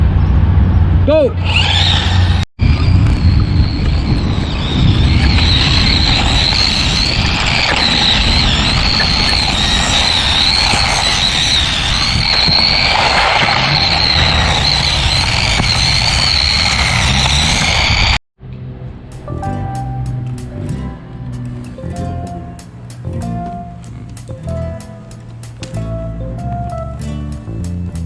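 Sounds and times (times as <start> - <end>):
heavy rumbling noise: 0.0 - 28.0
rc car electric motor whining: 1.4 - 18.2.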